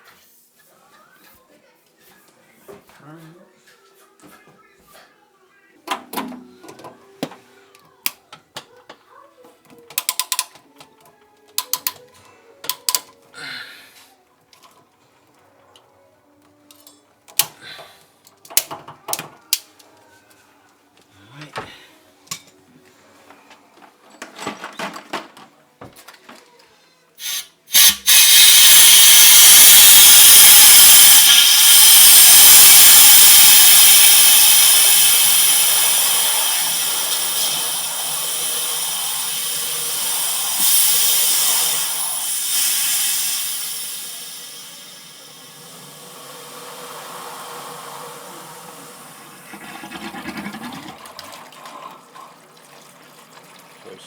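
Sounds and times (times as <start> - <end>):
water rushing into tank: 27.2 - 54.0.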